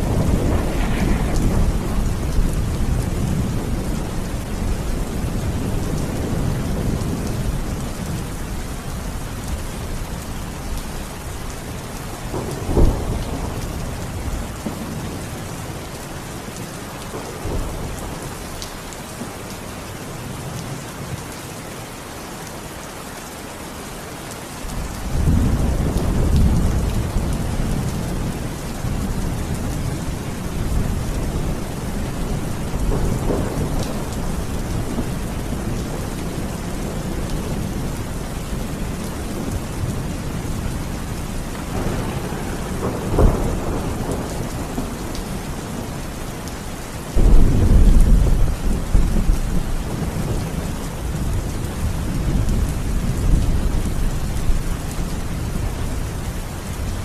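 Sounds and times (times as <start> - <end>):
sharp thunderclap: 0.0 - 4.2, 47.2 - 50.4
rolling rumble of thunder: 0.0 - 15.9, 24.7 - 56.0
steady rain falling: 0.0 - 57.0.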